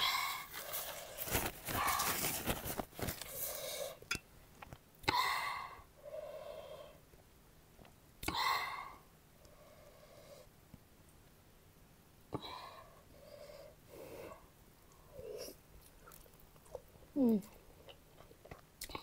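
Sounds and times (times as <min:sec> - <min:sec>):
person gasping breaths: 0:00.0 - 0:02.4.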